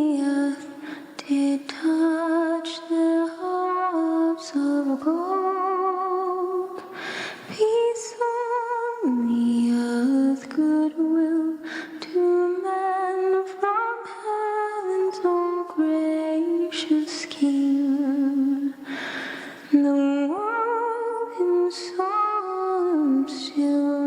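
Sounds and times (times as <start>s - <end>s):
breaths between phrases: 6.8s - 7.5s, 18.8s - 19.7s.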